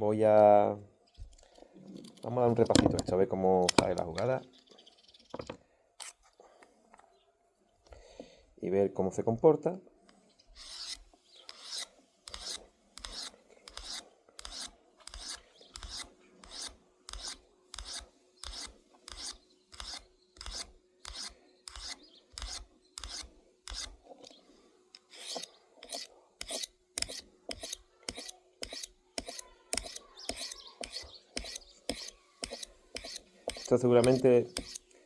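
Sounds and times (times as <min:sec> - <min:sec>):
knife blade scraping on sharpener: 0:10.6 - 0:24.4, 0:25.0 - 0:34.9.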